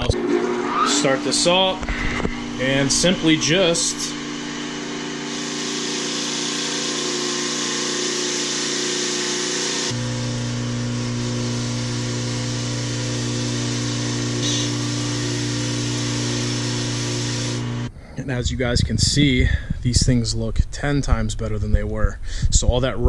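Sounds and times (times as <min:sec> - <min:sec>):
deep hum: 0:00.0 - 0:05.3, 0:09.9 - 0:23.0
power tool scrubbing hiss: 0:01.0 - 0:17.9.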